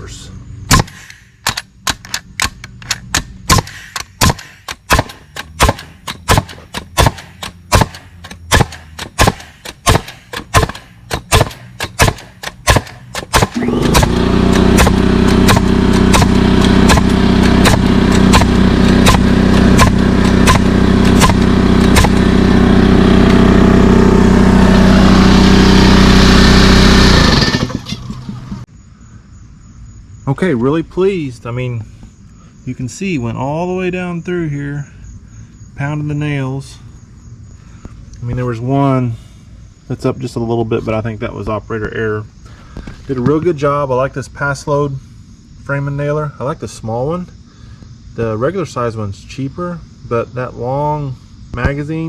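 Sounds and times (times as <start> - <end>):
nail gun firing: 0.7 - 23.4, 26.5 - 28.6
air compressor running: 3.5 - 28.7.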